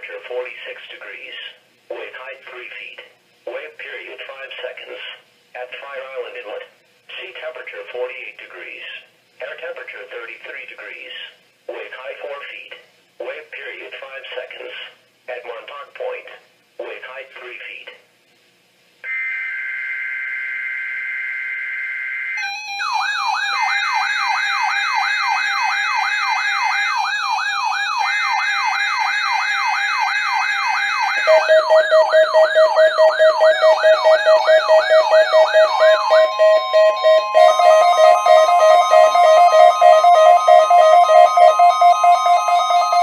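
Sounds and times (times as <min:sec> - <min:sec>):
buzzy two-tone data header: 0:19.0 - 0:22.5
steady alert tone: 0:19.0 - 0:24.1, 0:31.1 - 0:43.0
warbling siren: 0:19.0 - 0:43.0.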